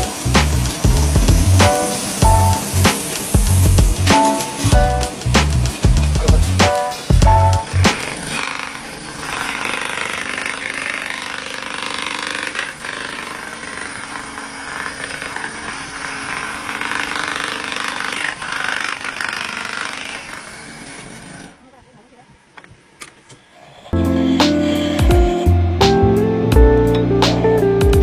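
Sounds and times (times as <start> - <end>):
power tool buzzing and rattling: 0.0 - 21.6.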